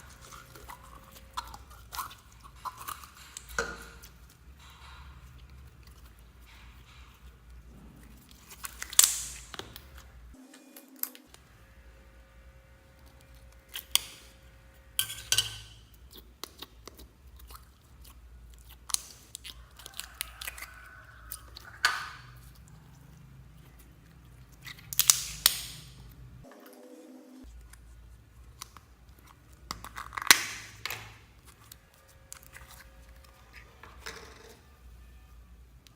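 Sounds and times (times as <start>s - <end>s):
slime squelching: 0.0s - 10.1s, 12.8s - 26.4s, 27.4s - 34.0s
slime popping and crackling: 8.3s - 10.0s, 24.4s - 26.0s.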